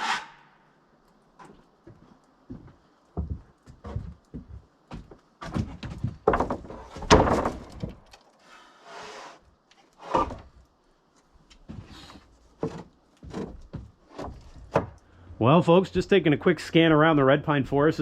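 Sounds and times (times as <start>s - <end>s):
wooden boards thumping: 5.5s - 8.1s, 12.6s - 15.0s.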